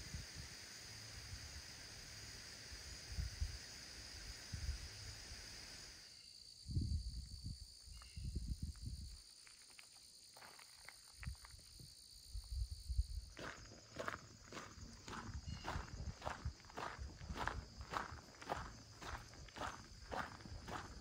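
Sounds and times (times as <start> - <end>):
high insect drone: 0.0 - 21.0
footsteps on a trail: 8.8 - 11.9, 13.3 - 21.0.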